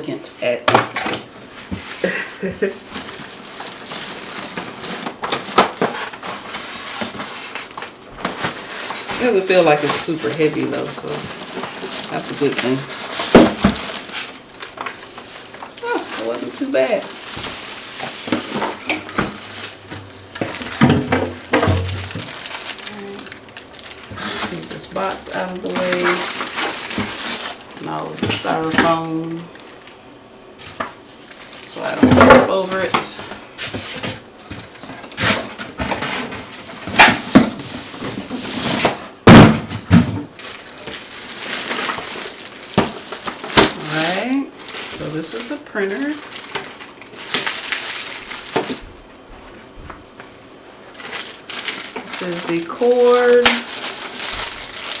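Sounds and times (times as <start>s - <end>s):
packaging rustling and crinkling: 0.7s - 55.0s
knocks and thumps: 18.3s - 22.3s.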